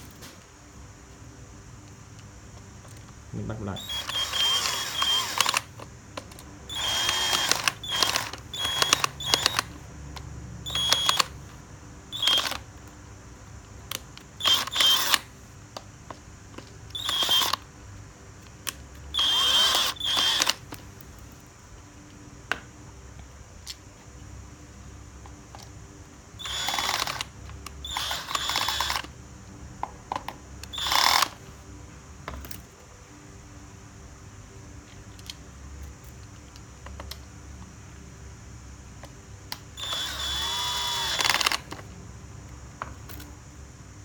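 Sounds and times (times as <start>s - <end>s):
drill driving screws: 3.8s - 5.8s, 6.7s - 9.8s, 10.6s - 11.4s, 12.1s - 12.6s, 14.4s - 15.3s, 16.9s - 17.6s, 19.1s - 20.6s, 26.4s - 29.1s, 30.7s - 31.4s, 39.8s - 41.7s.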